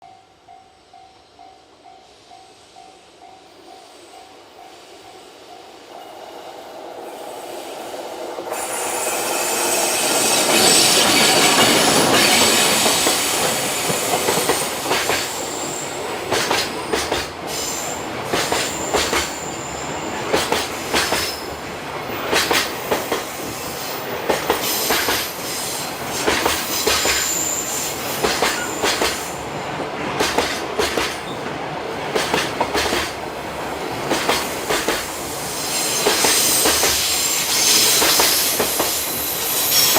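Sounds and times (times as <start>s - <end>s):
freight train passing: 0.0s - 39.9s
rail joint clacks: 9.9s - 17.5s, 18.1s - 23.3s, 26.0s - 27.4s, 28.1s - 33.2s, 33.8s - 35.1s, 35.8s - 39.9s.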